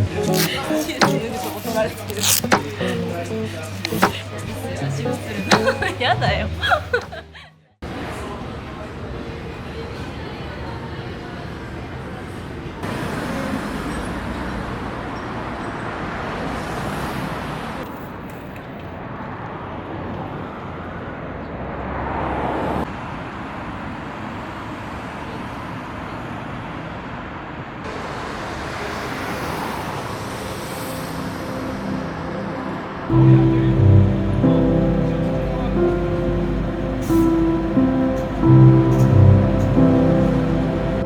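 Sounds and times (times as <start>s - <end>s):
cars passing on road: 12.8s - 18.3s, 19.0s - 41.0s
vehicle passing by: 21.6s - 22.9s.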